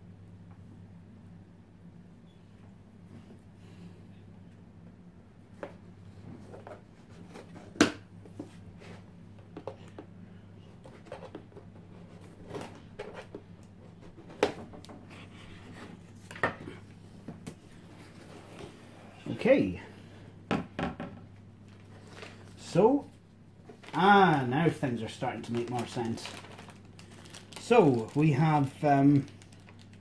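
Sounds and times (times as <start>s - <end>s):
steady low hum: 0.0s - 30.0s
cardboard box being rummaged: 25.7s - 28.4s.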